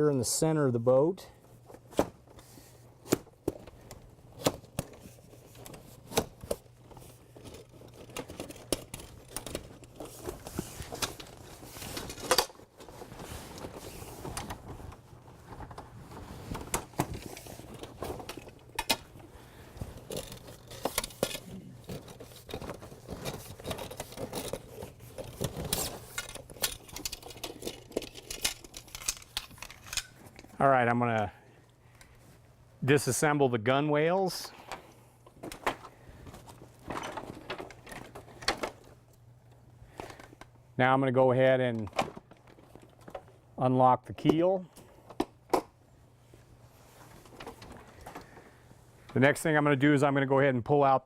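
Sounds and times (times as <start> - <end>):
frame rods clicking and rattling: 4.4 - 12.8, 19.9 - 30.5.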